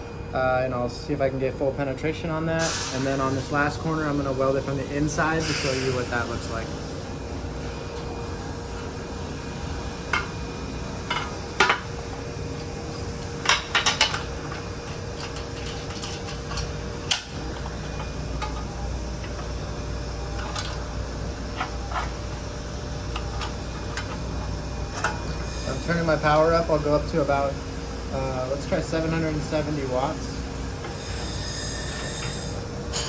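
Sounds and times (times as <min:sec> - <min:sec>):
steady machine hum: 0:00.0 - 0:33.0.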